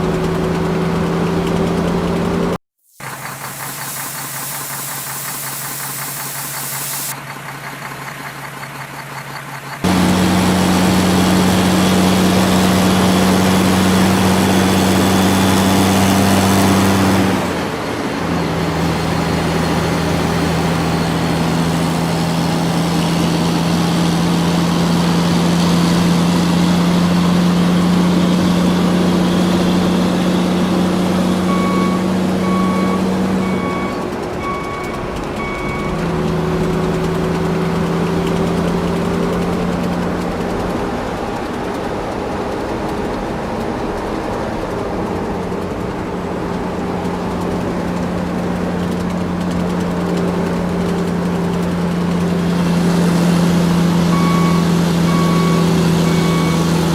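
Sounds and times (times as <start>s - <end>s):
heavy machinery diesel engines: 0.0s - 56.9s
reversing alarm beeping: 31.4s - 36.1s, 54.1s - 56.9s.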